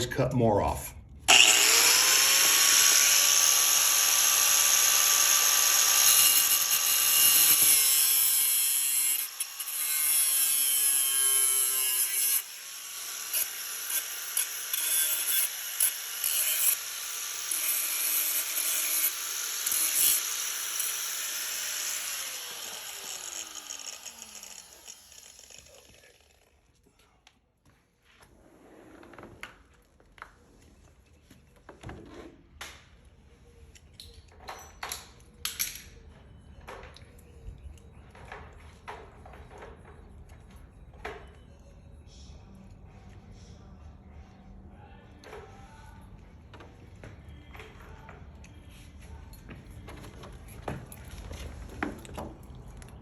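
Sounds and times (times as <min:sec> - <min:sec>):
power saw cutting: 0:01.3 - 0:26.5.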